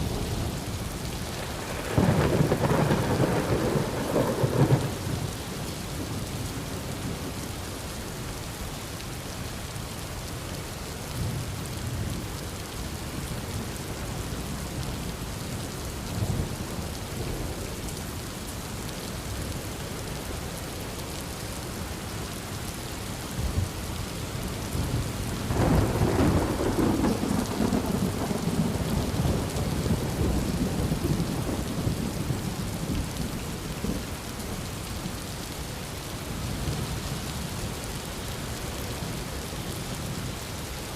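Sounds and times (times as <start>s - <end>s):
heavy rain falling: 0.0s - 40.9s
rolling thunder: 1.3s - 5.2s, 24.7s - 34.0s.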